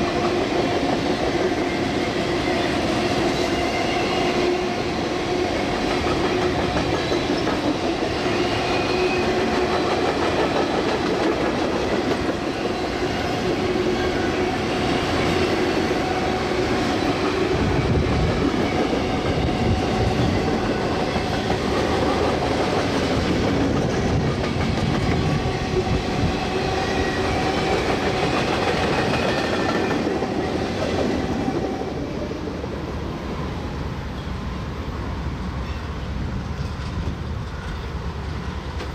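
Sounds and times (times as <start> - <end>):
train cars clattering on track: 5.5 - 31.8, 35.6 - 38.9.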